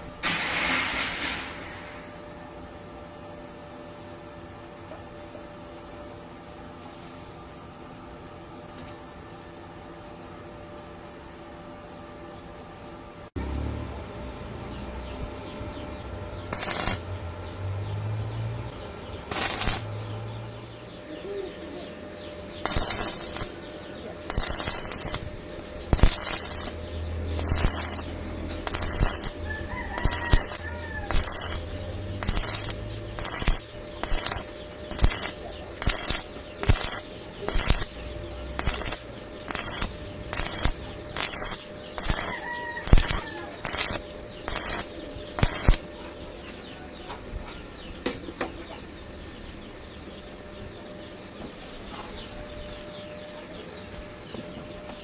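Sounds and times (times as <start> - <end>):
welding arc crackling hiss: 16.5 - 17.3, 19.3 - 20.2, 22.6 - 23.7, 24.3 - 45.9.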